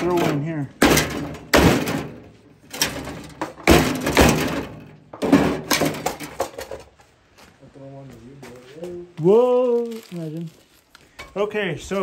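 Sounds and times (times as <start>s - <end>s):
sledgehammer smashing appliance: 0.0s - 6.6s.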